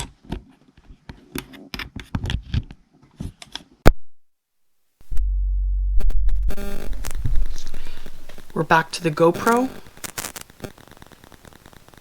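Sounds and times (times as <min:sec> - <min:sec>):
low electrical hum: 0:04.6 - 0:11.4.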